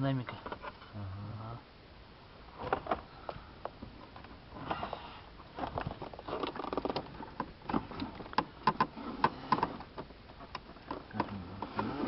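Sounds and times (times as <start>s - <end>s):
rustling of wiring: 2.5s - 12.0s.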